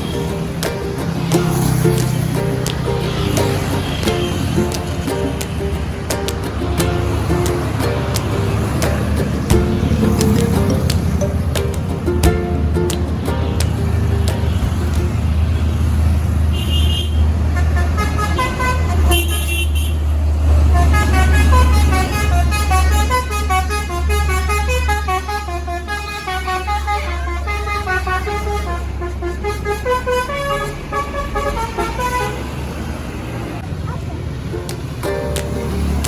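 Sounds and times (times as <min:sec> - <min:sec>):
musical bus horn melody: 0:00.0 - 0:05.8, 0:12.5 - 0:20.0, 0:20.6 - 0:32.7
bus engine rumble: 0:00.0 - 0:36.0.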